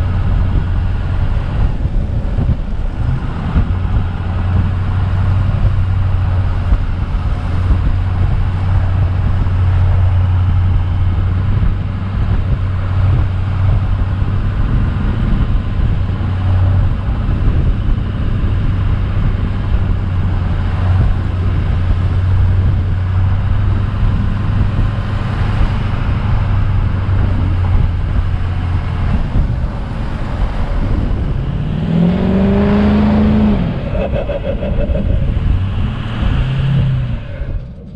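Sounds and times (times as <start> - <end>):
engine running and revving: 0.0 - 37.9.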